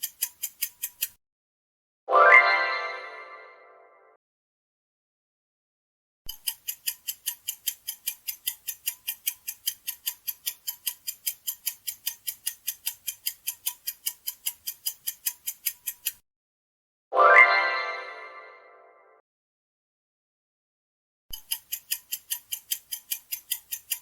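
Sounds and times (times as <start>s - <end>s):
timer ticking: 0.0s - 1.2s, 6.3s - 16.2s, 21.3s - 24.0s.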